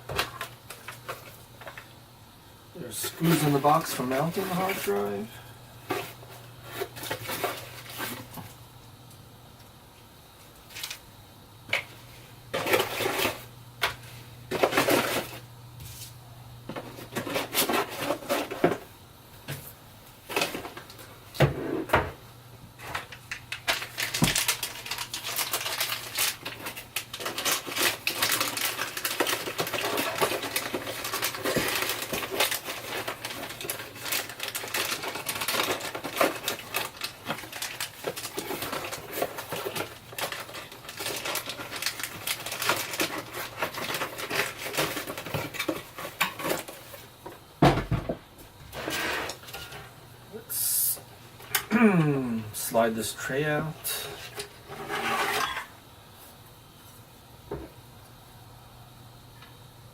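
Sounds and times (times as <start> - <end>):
packaging crinkling: 22.8 - 47.2.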